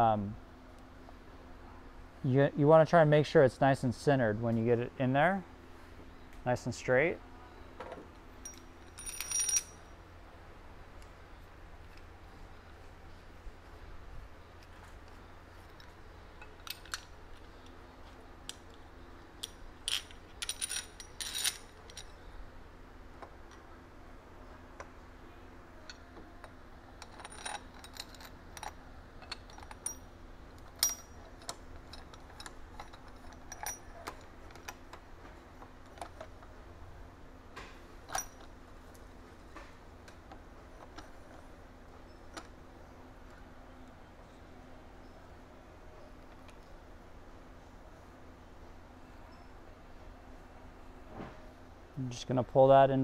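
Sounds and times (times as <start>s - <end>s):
low steady hum: 0.0s - 53.0s
small metal parts clinking: 8.4s - 9.9s, 15.6s - 17.7s, 19.4s - 22.3s, 25.9s - 34.9s, 38.0s - 39.0s.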